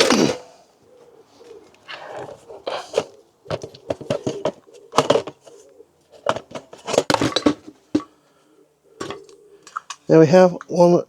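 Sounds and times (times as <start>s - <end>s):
hard parts clicking and rattling: 2.1s - 8.2s, 9.0s - 10.8s.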